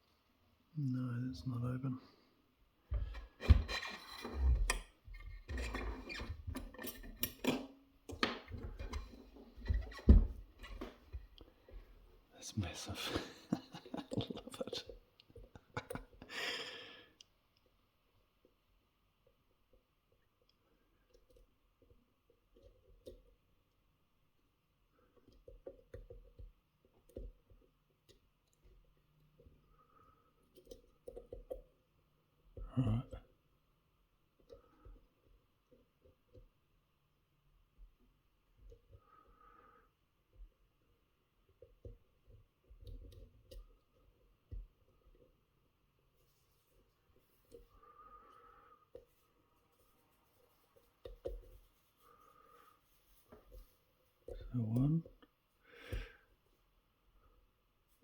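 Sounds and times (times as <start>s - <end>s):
lock pick scraping and clicking: 3.1s - 11.2s.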